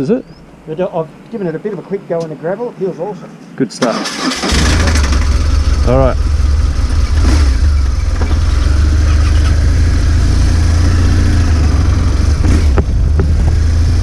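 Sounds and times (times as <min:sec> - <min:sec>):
motorcycle engine rumbling: 0:03.9 - 0:14.0.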